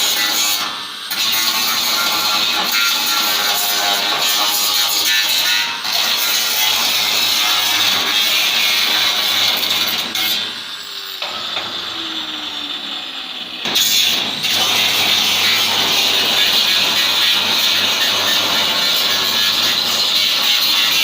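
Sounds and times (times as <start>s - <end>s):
hissing crackling of cutting steel: 0.0s - 11.8s, 13.7s - 21.0s
tool whine winding down: 10.5s - 21.0s.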